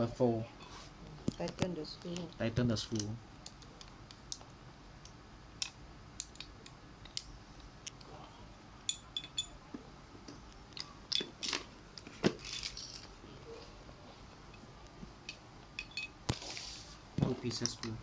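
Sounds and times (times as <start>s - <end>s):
metallic clinks: 8.9s - 9.6s, 12.4s - 13.2s, 15.3s - 16.2s.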